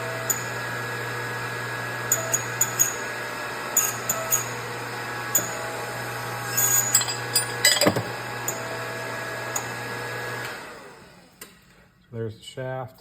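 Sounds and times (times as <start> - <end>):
metal parts clinking: 6.5 - 8.1
metallic clank: 6.5 - 8.2.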